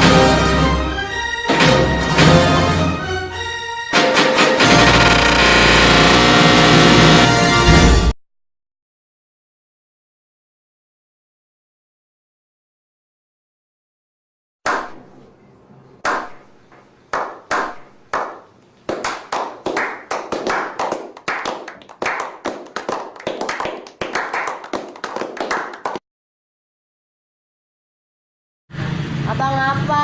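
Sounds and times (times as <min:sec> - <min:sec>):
hand clapping: 0:14.7 - 0:15.0, 0:16.0 - 0:26.0.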